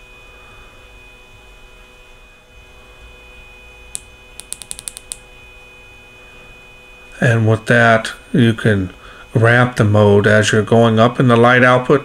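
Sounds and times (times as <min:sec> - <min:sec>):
steady electrical hum: 0:00.0 - 0:12.0
flashlight button clicking: 0:04.0 - 0:05.2.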